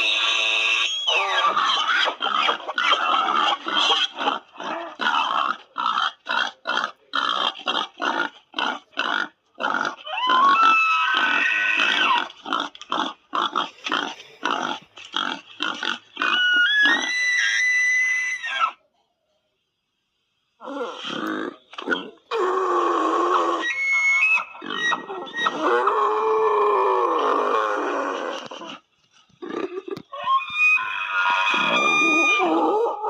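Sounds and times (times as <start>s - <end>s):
creature squealing: 0.0s - 5.6s, 9.7s - 12.3s, 16.2s - 18.8s, 20.6s - 28.8s, 29.5s - 33.0s
creature grunting calls: 24.6s - 28.8s.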